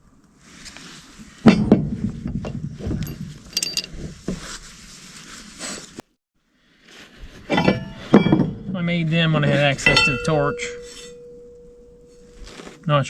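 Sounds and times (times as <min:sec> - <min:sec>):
metal parts clinking and knocking: 0:01.5 - 0:04.0, 0:07.5 - 0:12.8
short metallic ring: 0:07.5 - 0:13.0.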